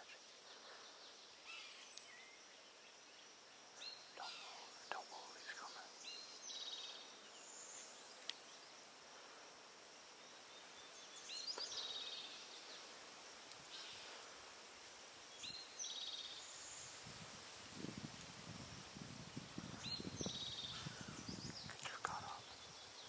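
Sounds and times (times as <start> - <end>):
quiet woodland background: 0.0 - 23.0.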